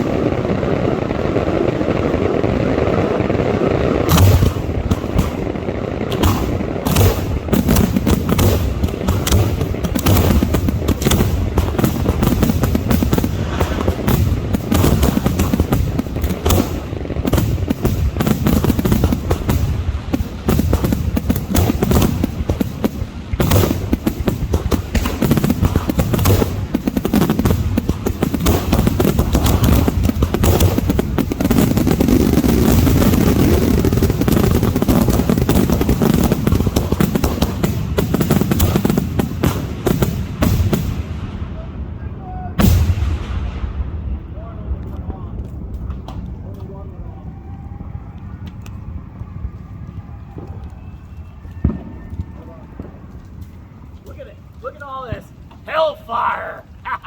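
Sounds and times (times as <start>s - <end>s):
fireworks shells bursting: 3.9s - 41.0s.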